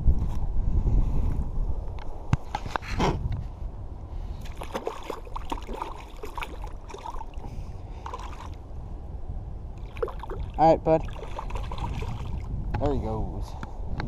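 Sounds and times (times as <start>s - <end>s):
water splashing and dripping: 4.4s - 7.4s, 8.0s - 8.6s, 9.8s - 12.6s
rush of water: 4.4s - 8.6s, 9.8s - 12.5s.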